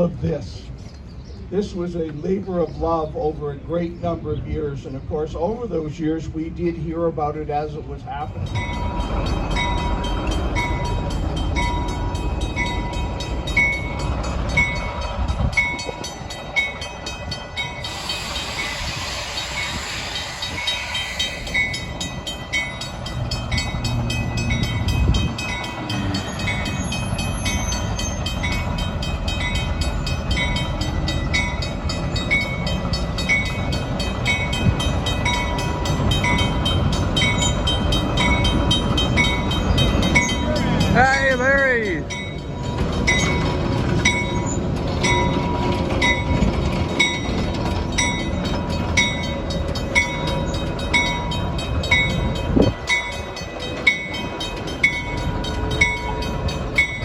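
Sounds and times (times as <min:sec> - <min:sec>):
locomotive rumbling: 0:00.0 - 0:57.0
air hiss: 0:17.8 - 0:21.8.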